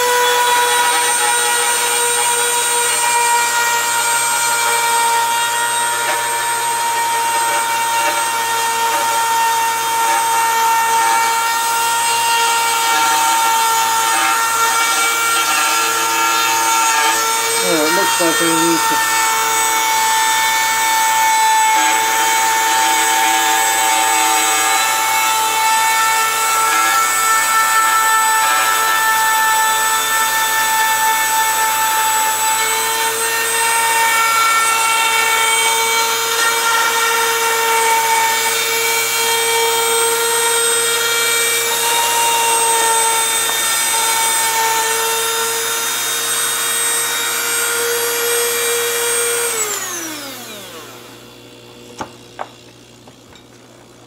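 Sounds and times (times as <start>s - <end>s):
router winding down: 0.0s - 52.6s
router high whine: 0.0s - 54.0s.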